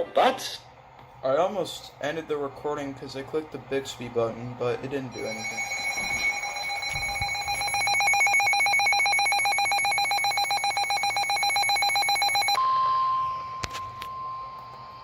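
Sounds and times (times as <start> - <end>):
rapidly pulsing electronic alert tone: 5.1 - 12.6
steady warning alarm tone: 5.1 - 15.0.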